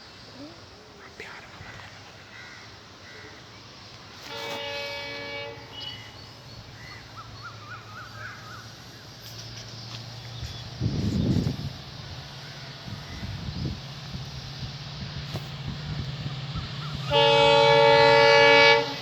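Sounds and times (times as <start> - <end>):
locomotive engine hum: 0.0 - 19.0
crows cawing: 2.2 - 3.5, 6.8 - 9.0
locomotive air horn blast: 4.2 - 6.4, 17.0 - 19.0
small birds chirping: 5.6 - 17.1.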